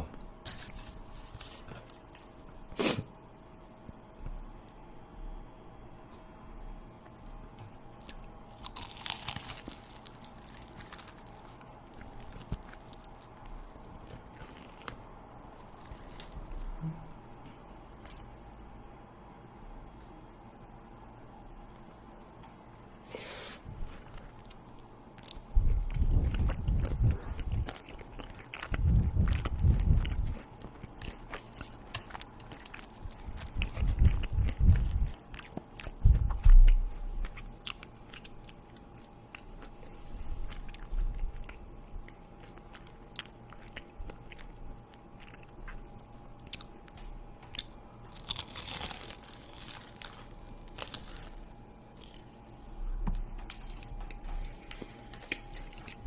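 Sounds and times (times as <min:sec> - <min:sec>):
person chewing crunchy food: 0:07.0 - 0:17.0, 0:23.6 - 0:56.0.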